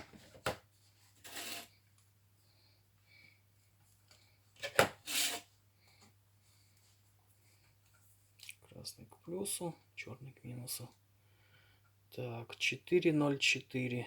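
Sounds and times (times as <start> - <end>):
rustling scrapes: 0.8 - 1.8, 5.0 - 5.5.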